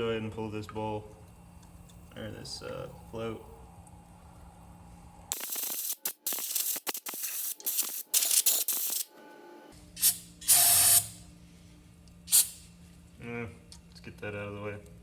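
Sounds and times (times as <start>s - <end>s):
hand ratchet turning: 5.4s - 9.0s
short hissing spray bursts: 5.4s - 9.0s, 10.0s - 11.2s, 12.3s - 12.7s.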